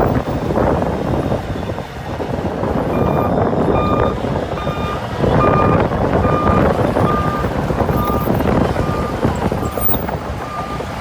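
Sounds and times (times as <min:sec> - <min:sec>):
heavy machine engine under load: 0:00.0 - 0:11.0
reversing alarm beeping: 0:02.9 - 0:10.9.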